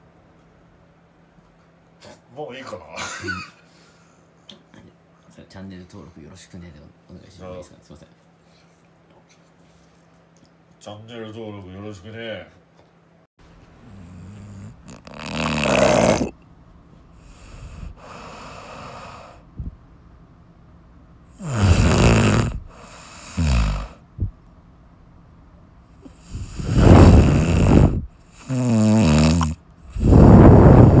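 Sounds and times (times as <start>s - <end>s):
soft breaths: 8.3s - 10.2s, 17.1s - 19.8s
person snoring loudly: 13.8s - 16.4s, 17.3s - 19.4s, 21.3s - 24.0s, 26.1s - 31.0s.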